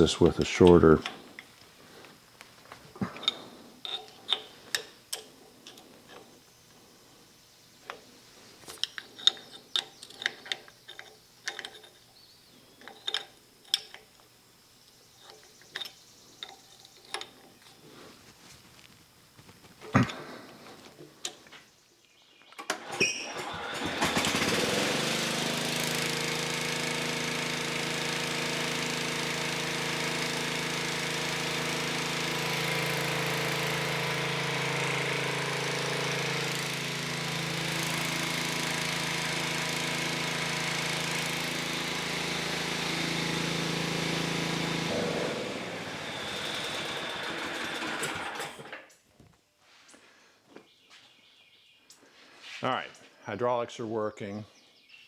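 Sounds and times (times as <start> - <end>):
tractor engine running: 0.0 - 2.0, 22.8 - 48.7.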